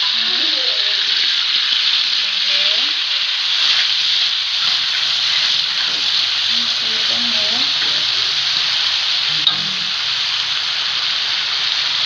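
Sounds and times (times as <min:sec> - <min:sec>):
food sizzling in hot oil: 0:00.0 - 0:12.0.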